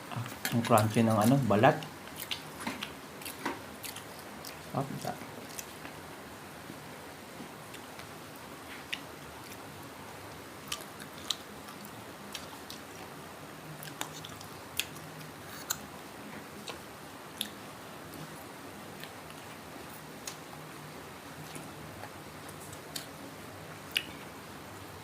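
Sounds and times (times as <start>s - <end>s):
faint steady hiss: 0.0s - 25.0s
crunchy chewing: 2.1s - 6.0s.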